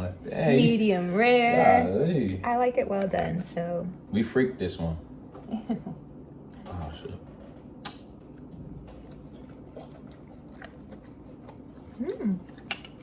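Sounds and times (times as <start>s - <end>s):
steady low hum: 0.0s - 13.0s
person chewing: 7.8s - 13.0s.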